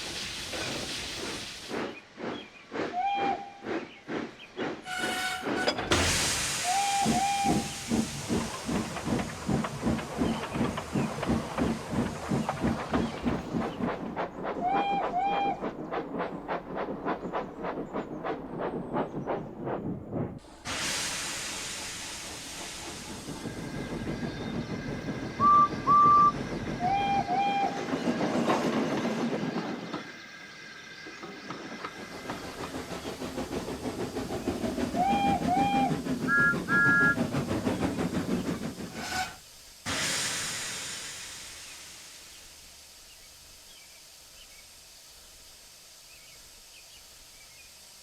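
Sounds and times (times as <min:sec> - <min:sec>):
hissing steam: 0:00.0 - 0:48.0
steam locomotive chuffing: 0:00.0 - 0:48.0
train whistle toots: 0:02.9 - 0:03.6, 0:04.8 - 0:07.9, 0:14.6 - 0:15.6, 0:25.4 - 0:27.8, 0:35.0 - 0:37.2.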